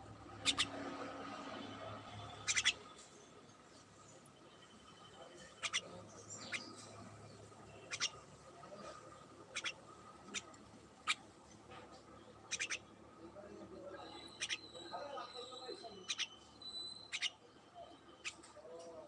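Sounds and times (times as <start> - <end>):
bird chip calls: 0.4 - 0.8, 2.3 - 3.2, 5.1 - 8.4, 9.5 - 11.3, 12.2 - 13.0, 13.8 - 18.5.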